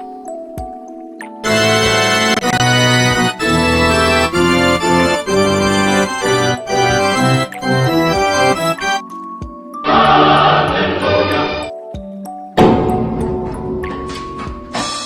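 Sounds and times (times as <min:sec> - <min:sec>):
organ-like keyboard chords: 0:01.4 - 0:09.1, 0:09.8 - 0:11.7.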